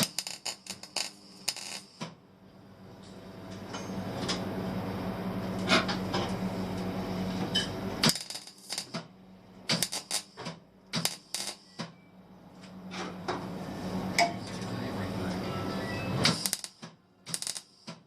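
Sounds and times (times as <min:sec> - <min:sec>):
welding arc crackling: 0:00.0 - 0:02.2, 0:07.8 - 0:11.8, 0:16.2 - 0:18.0
welder mains hum: 0:00.0 - 0:18.0.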